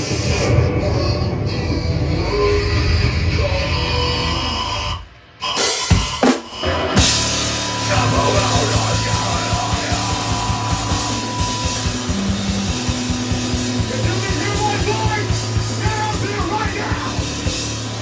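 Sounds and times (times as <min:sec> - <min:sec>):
instrumental band playing live: 0:05.6 - 0:18.0
hard drum hits: 0:05.9 - 0:18.0.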